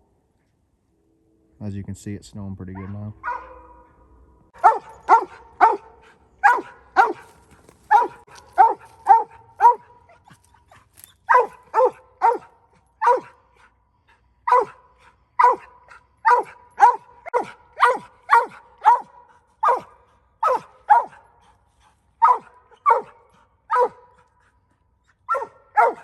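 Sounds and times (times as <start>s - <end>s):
dog barking sharply: 2.8s - 3.9s, 4.6s - 7.3s, 7.9s - 10.0s, 11.3s - 13.4s, 14.5s - 14.8s, 15.4s - 21.3s, 22.2s - 24.2s, 25.3s - 26.0s.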